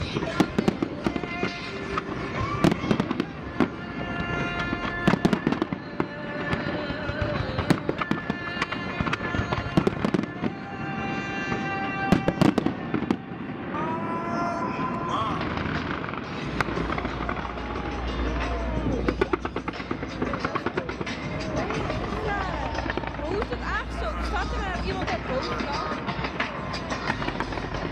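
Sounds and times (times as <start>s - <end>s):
fireworks bangs and crackles: 0.0s - 27.9s.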